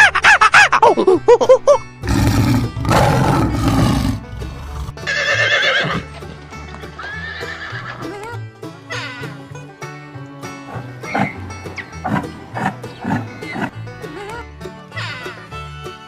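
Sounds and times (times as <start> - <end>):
background music: 0.0 - 16.0
horse neighing: 2.0 - 6.1, 7.0 - 8.1, 10.7 - 13.8.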